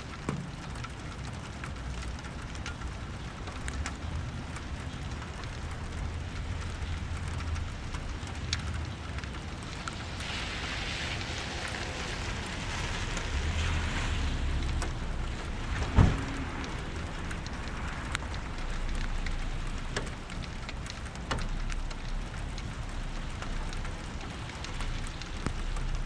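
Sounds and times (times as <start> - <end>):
raindrop ticks: 0.0 - 26.0
steady rain: 0.0 - 26.0
low thunder rumble: 11.4 - 18.6.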